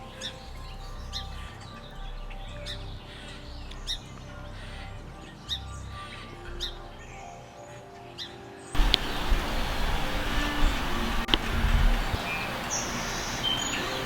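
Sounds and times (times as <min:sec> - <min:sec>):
soft sustained low tones: 0:00.0 - 0:07.5
songbirds chirping: 0:00.0 - 0:14.0.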